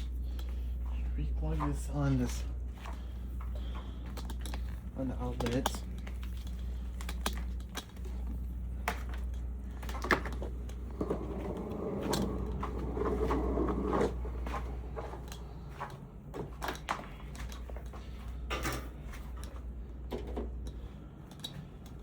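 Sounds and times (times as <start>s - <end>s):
low steady hum: 0.0s - 22.0s
clicks and knocks of handling: 3.4s - 12.8s.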